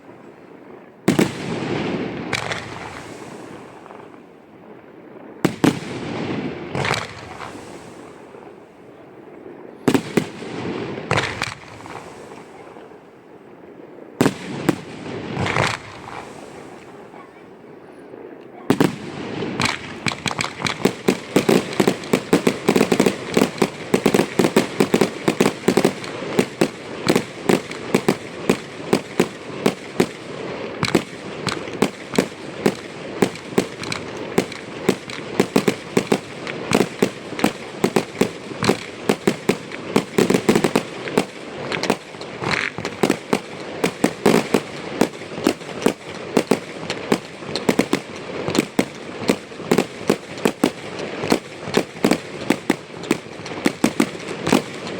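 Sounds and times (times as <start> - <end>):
fireworks crackling: 0.0 - 54.9
firework shell bursts and bangs: 18.8 - 54.9.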